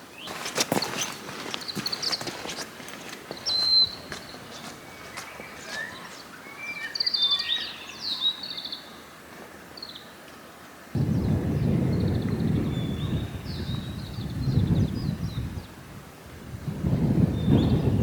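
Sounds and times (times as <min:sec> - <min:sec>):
small birds chirping: 0:00.0 - 0:10.1, 0:11.0 - 0:15.8, 0:16.6 - 0:18.0
thunder rumbling: 0:11.0 - 0:18.0.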